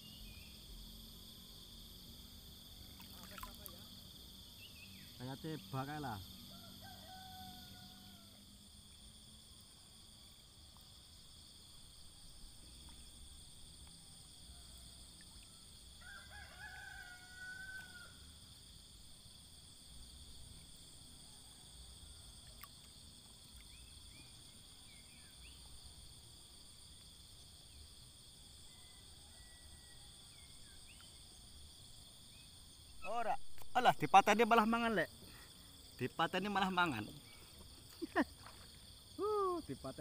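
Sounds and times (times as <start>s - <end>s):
high-pitched insect chorus: 0.0s - 40.0s
faint rooster crowing: 6.4s - 8.7s, 14.1s - 18.4s, 28.5s - 30.5s.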